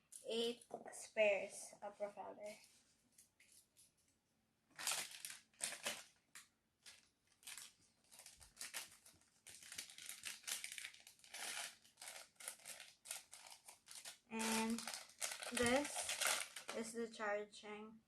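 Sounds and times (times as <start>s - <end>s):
plastic packaging crinkling: 4.7s - 17.0s.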